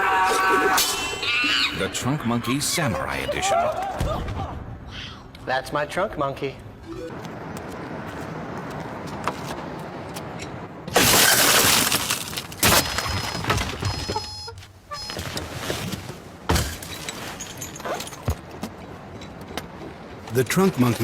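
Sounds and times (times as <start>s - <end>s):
glass breaking: 10.9s - 14.1s, 16.5s - 18.3s.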